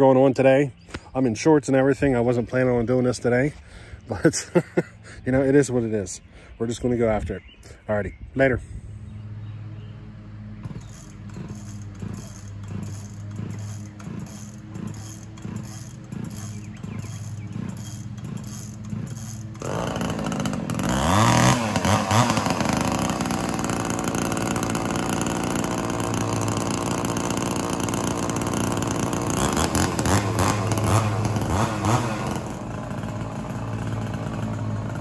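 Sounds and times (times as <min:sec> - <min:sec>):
chainsaw idling and revving: 0:10.6 - 0:35.0.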